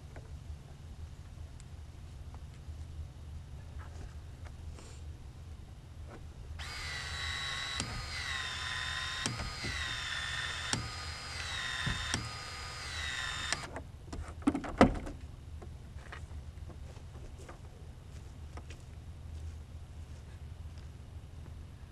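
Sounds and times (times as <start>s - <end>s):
power tool motor whining: 6.6s - 13.7s
tool clicking: 6.6s - 13.7s.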